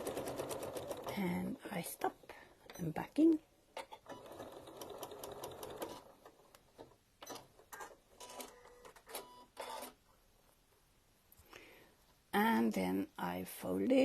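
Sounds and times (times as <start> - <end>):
sewing machine running: 0.0 - 1.2.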